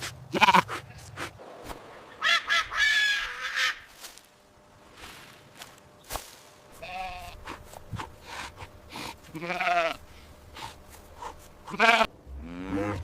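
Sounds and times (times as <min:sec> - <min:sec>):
sheep bleating: 0:00.3 - 0:00.7, 0:06.8 - 0:07.4, 0:09.2 - 0:10.0, 0:11.6 - 0:12.1.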